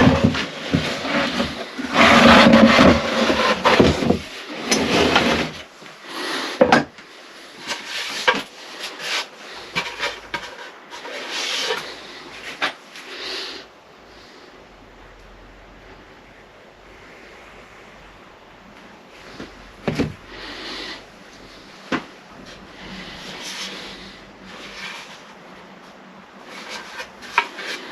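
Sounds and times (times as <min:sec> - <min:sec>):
wood scraping and rubbing: 0:00.0 - 0:13.6, 0:19.2 - 0:25.7, 0:26.4 - 0:27.9.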